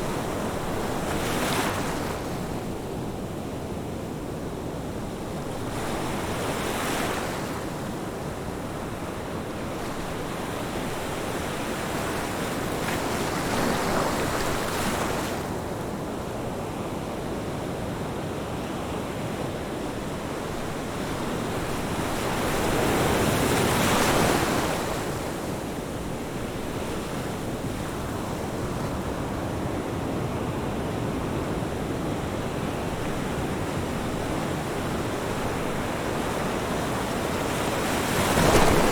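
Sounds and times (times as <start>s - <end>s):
ocean surf washing on beach: 31.8s - 38.9s
waves breaking: 35.2s - 38.9s.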